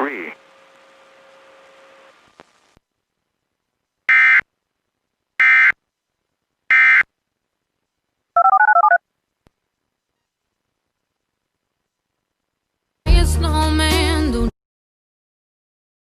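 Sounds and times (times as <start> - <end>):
touch-tone beeps: 8.4 - 9.0.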